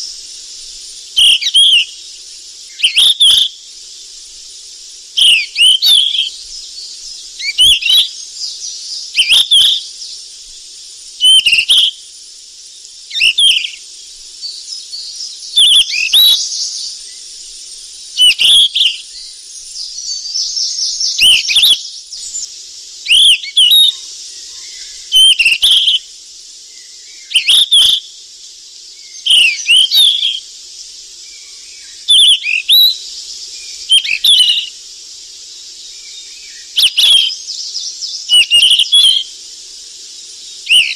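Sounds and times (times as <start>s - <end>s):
steady high hiss: 0.0s - 40.9s
bird whistling song: 1.1s - 2.1s, 2.7s - 3.6s, 5.2s - 10.2s, 11.2s - 12.0s, 13.1s - 13.8s, 14.4s - 26.1s, 26.7s - 28.1s, 29.0s - 30.4s, 31.2s - 34.7s, 35.8s - 39.3s, 40.6s - 40.9s.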